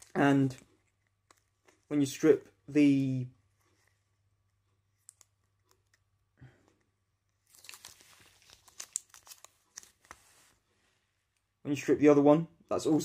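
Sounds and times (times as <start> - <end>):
backing peeled off velcro strip: 7.5 - 10.5.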